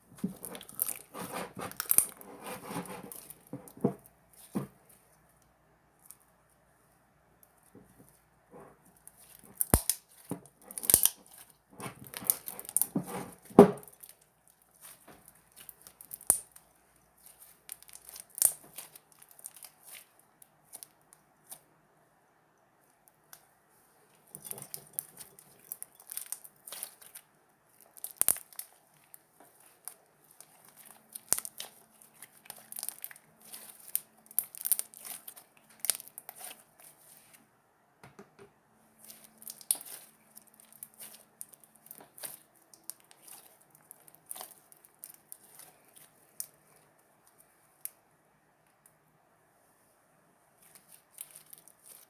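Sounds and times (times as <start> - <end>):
slime crackling and popping: 9.2 - 12.9, 14.8 - 16.6, 17.2 - 20.1, 24.3 - 27.2, 27.8 - 36.9, 39.0 - 46.5.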